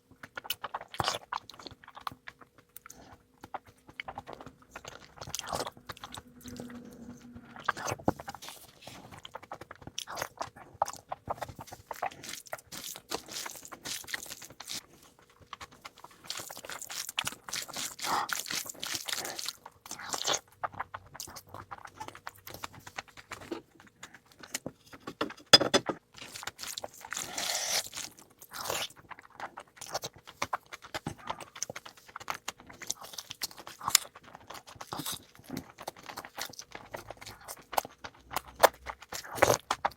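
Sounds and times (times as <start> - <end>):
chewing and biting food: 0.0 - 39.9
food crunches: 7.6 - 25.2, 26.1 - 39.9.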